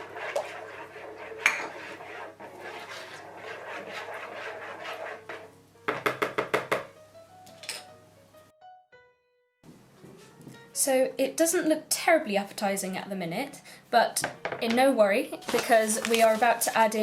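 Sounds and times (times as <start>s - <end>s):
utensil scraping a mixing bowl: 0.0s - 5.5s
background music: 4.1s - 17.0s.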